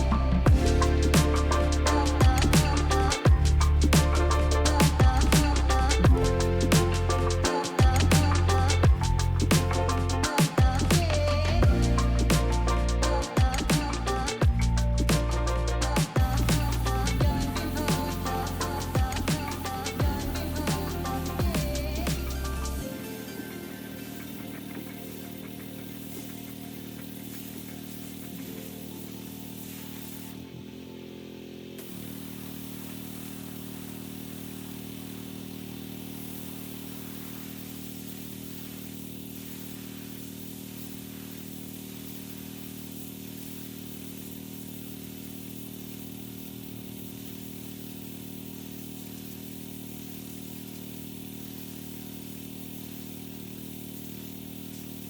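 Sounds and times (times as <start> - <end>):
pressure washer engine running: 0.0 - 55.0.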